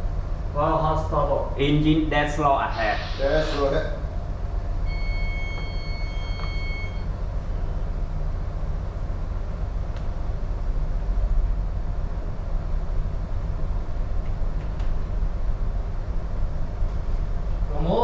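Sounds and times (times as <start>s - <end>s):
ship engine low rumble: 0.0s - 18.0s
high electronic beep: 4.9s - 7.1s.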